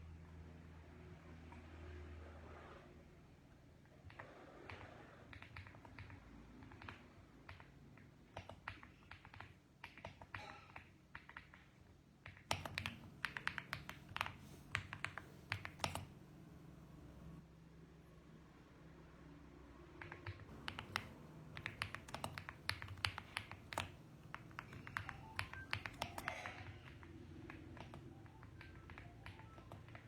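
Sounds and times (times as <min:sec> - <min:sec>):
mechanical keyboard keystrokes: 0:04.1 - 0:17.4, 0:20.0 - 0:30.0.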